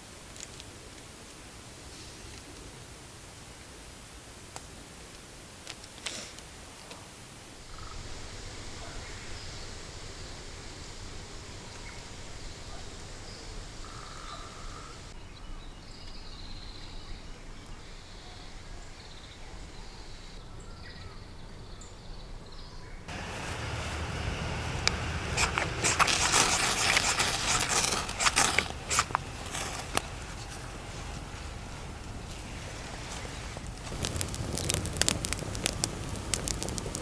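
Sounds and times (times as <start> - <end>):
outdoor background noise: 0.0 - 37.0
short bird calls: 11.7 - 15.2.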